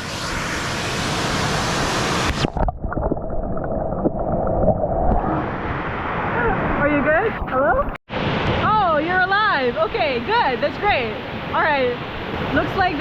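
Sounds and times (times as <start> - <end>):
rushing waterfall: 8.1 - 13.0.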